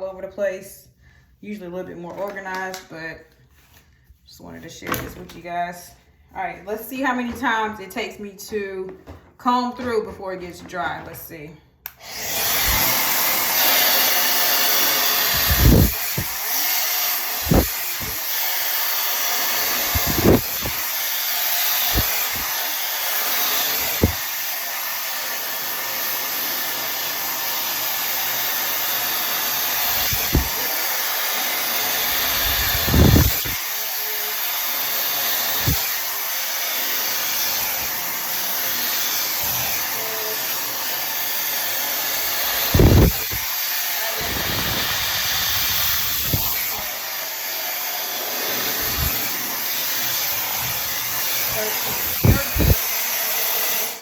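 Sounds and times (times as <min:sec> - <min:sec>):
blow dryer running: 0:11.0 - 0:54.0.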